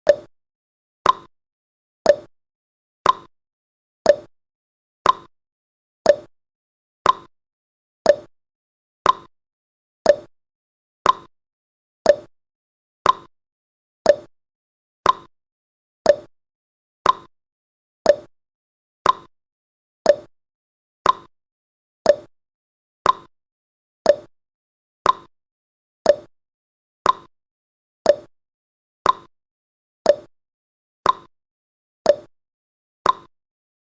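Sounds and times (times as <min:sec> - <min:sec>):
timer clicking: 0:00.0 - 0:00.3, 0:01.0 - 0:01.3, 0:02.1 - 0:02.3, 0:03.0 - 0:03.3, 0:04.0 - 0:04.3, 0:05.0 - 0:05.3, 0:06.0 - 0:06.3, 0:07.0 - 0:07.3, 0:08.1 - 0:08.3, 0:09.0 - 0:09.3, 0:10.0 - 0:10.3, 0:11.0 - 0:11.3, 0:12.0 - 0:12.3, 0:13.0 - 0:13.3, 0:14.0 - 0:14.3, 0:15.0 - 0:15.3, 0:16.0 - 0:16.3, 0:17.0 - 0:17.3, 0:18.0 - 0:18.3, 0:19.0 - 0:19.3, 0:20.0 - 0:20.3, 0:21.0 - 0:21.3, 0:22.0 - 0:22.3, 0:23.0 - 0:23.3, 0:24.0 - 0:24.3, 0:25.0 - 0:25.3, 0:26.0 - 0:26.3, 0:27.0 - 0:27.3, 0:28.0 - 0:28.3, 0:29.0 - 0:29.3, 0:30.0 - 0:30.3, 0:31.0 - 0:31.3, 0:32.0 - 0:32.3, 0:33.0 - 0:33.3.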